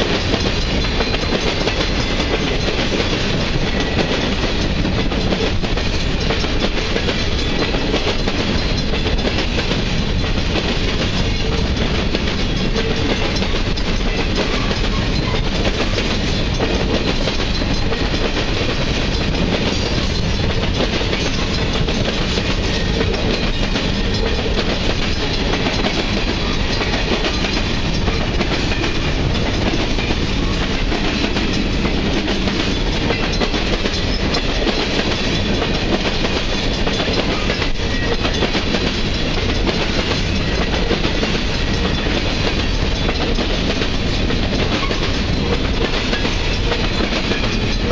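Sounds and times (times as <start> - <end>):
freight train wheels on rails: 0.0 - 47.9.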